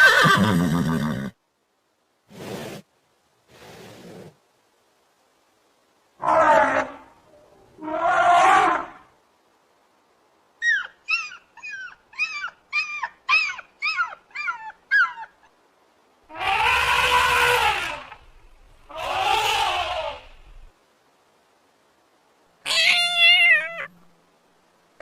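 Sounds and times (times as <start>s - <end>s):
dog yelping: 10.6s - 15.5s.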